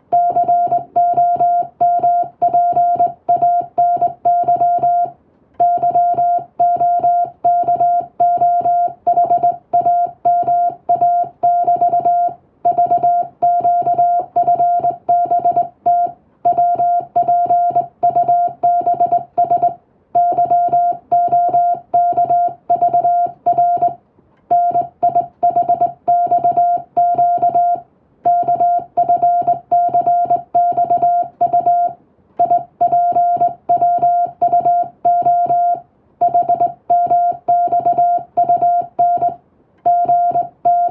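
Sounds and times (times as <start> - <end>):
morse code beeps: 0.1 - 40.9.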